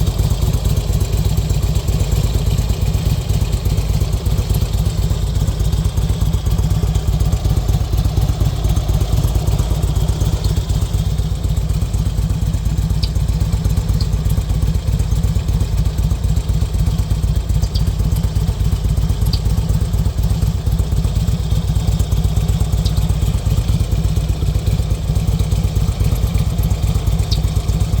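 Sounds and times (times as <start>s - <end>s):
motorcycle engine idling: 0.0s - 28.0s
faint light ticks: 10.3s - 11.1s, 12.8s - 14.4s, 17.5s - 20.0s, 22.6s - 23.4s, 26.0s - 27.9s.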